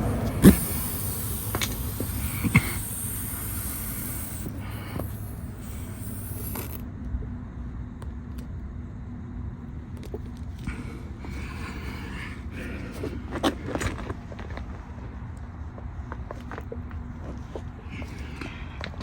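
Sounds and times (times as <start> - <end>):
low background rumble: 0.0 - 19.0.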